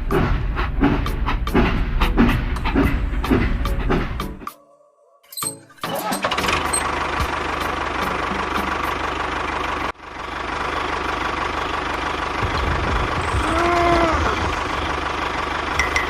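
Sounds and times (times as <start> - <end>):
small engine running: 6.0 - 16.0.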